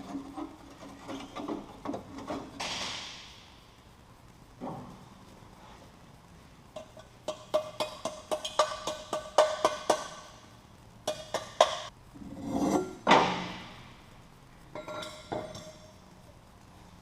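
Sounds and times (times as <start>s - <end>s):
hammer on steel pipe: 7.3s - 10.3s
metal scrape: 12.2s - 13.7s.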